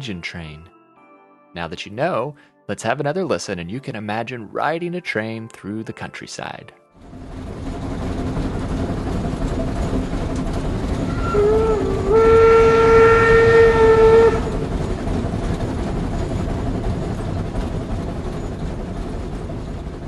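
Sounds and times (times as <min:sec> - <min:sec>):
steam locomotive running: 0:07.0 - 0:20.0
steam whistle blowing: 0:11.0 - 0:14.7.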